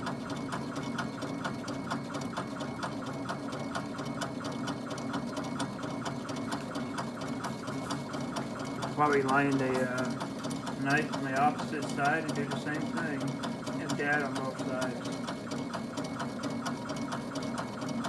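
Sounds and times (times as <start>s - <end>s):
laser engraver stepper motors whirring: 0.0s - 18.0s.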